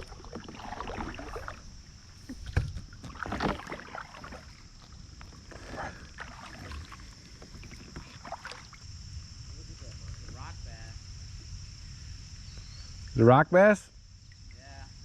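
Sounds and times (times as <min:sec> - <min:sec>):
water splashing around kayak: 0:00.0 - 0:10.5.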